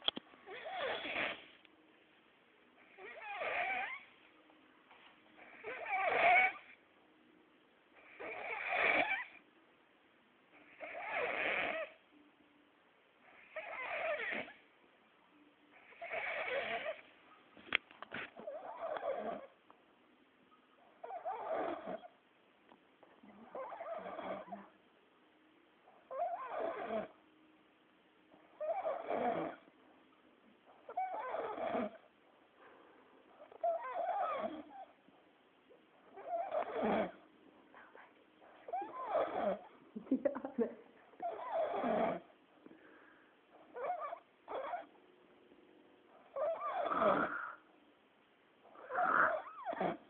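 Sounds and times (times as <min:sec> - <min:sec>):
man snoring with squealing pitch: 0:00.5 - 0:01.4, 0:02.9 - 0:04.0, 0:05.4 - 0:06.7, 0:08.0 - 0:09.4, 0:10.7 - 0:11.9, 0:13.4 - 0:14.6, 0:15.8 - 0:17.0, 0:21.0 - 0:22.1, 0:23.5 - 0:24.6, 0:26.1 - 0:27.2, 0:28.6 - 0:29.6, 0:30.9 - 0:32.0, 0:33.6 - 0:34.8, 0:36.2 - 0:37.2, 0:38.7 - 0:39.7, 0:41.3 - 0:42.3, 0:43.8 - 0:44.9, 0:46.4 - 0:47.6, 0:48.8 - 0:50.0
quiet breathing: 0:31.9 - 0:33.7, 0:34.6 - 0:39.8, 0:41.8 - 0:43.8.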